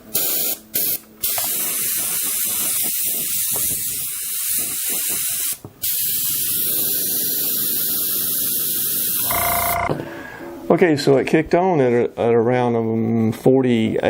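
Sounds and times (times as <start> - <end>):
compressed air hissing: 0.0 - 9.2.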